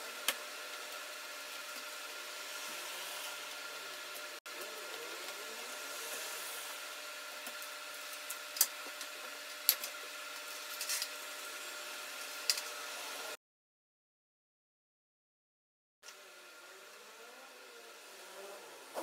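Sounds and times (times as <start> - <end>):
steady background hum: 0.0 - 13.4.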